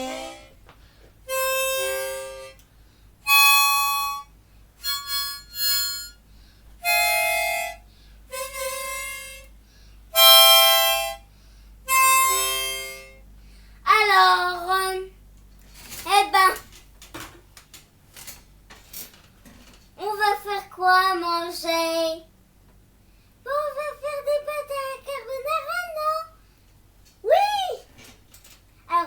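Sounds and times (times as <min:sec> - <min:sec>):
wind instrument playing notes: 0:00.0 - 0:00.6, 0:01.3 - 0:02.6, 0:06.8 - 0:09.5, 0:11.9 - 0:13.2.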